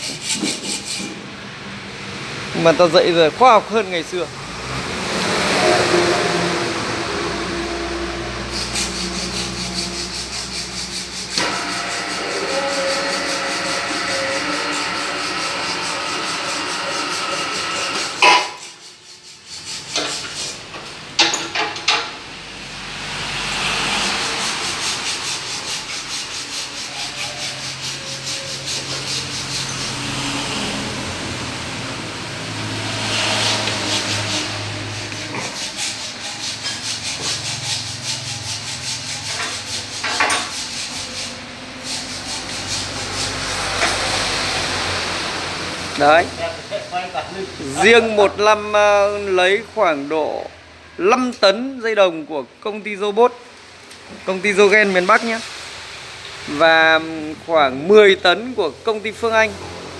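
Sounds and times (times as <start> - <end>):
rapid rubbing strokes: 0.0 - 1.2, 5.4 - 20.7, 23.5 - 31.2, 32.6 - 44.9.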